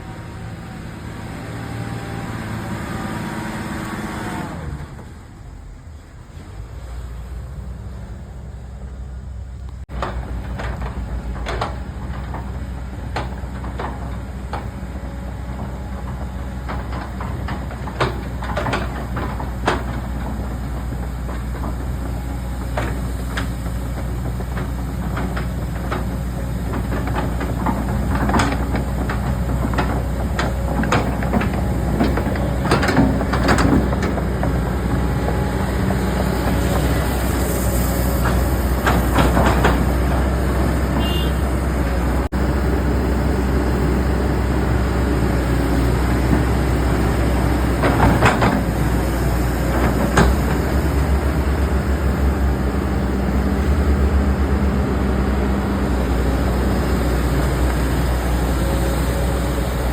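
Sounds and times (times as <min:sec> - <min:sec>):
knocks and clanks: 0:09.7 - 0:55.2.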